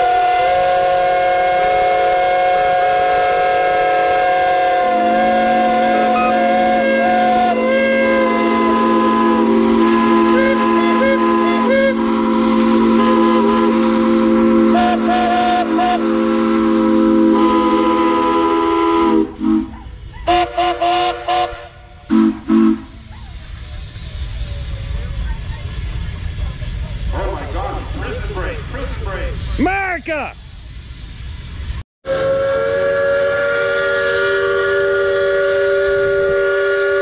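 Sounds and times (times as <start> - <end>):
steam whistles blowing: 0.0 - 24.8, 32.0 - 37.0.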